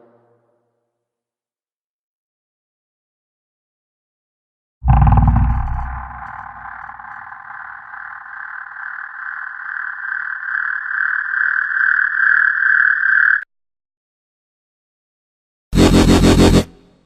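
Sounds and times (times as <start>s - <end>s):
pulsing riser tone rising in pitch: 4.8s - 10.3s.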